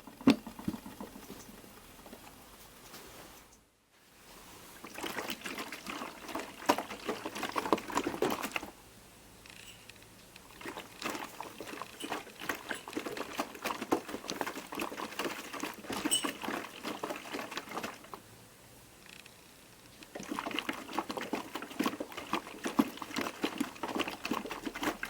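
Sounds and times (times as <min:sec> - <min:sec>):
washing machine drum sloshing laundry: 0:04.4 - 0:08.8, 0:10.4 - 0:18.2, 0:20.1 - 0:25.0.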